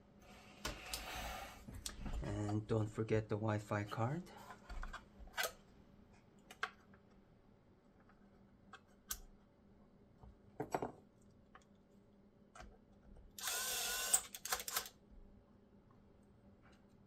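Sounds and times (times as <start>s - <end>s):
electric screwdriver whirring: 13.4s - 14.9s
small parts clicking: 13.4s - 15.0s.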